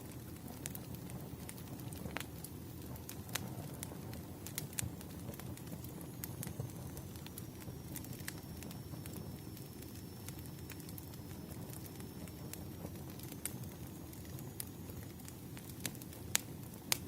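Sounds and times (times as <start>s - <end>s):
low rumble of burning logs: 0.0s - 17.0s
wood fire crackling and popping: 0.0s - 17.0s.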